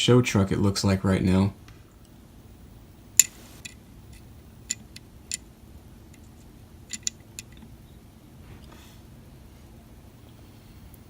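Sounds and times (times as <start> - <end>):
toy trucks clicking and tapping: 3.2 - 5.4, 6.9 - 7.6.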